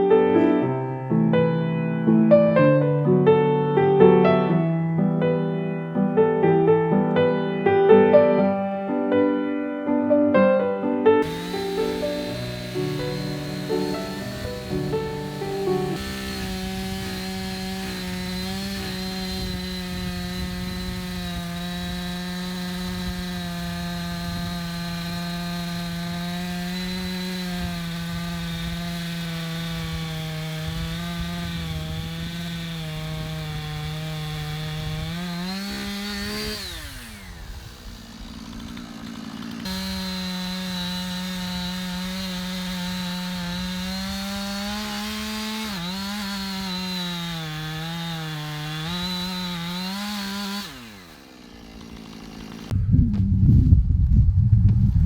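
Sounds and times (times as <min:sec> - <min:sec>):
chainsaw cutting wood: 0:11.2 - 0:52.8.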